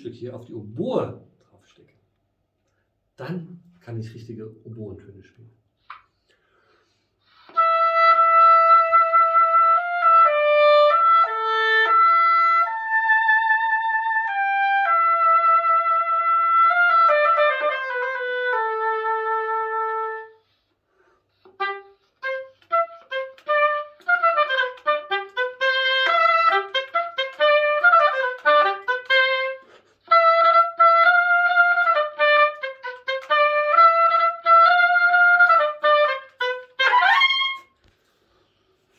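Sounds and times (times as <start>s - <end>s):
solo oboe melody: 7.3s - 20.7s, 21.4s - 37.9s.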